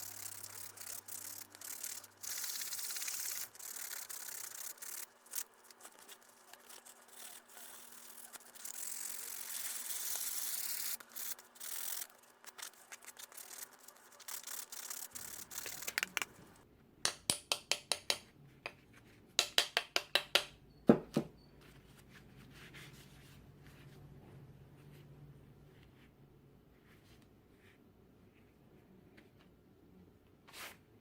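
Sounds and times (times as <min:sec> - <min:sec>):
hand rubbing and scraping wood: 0:00.0 - 0:16.6.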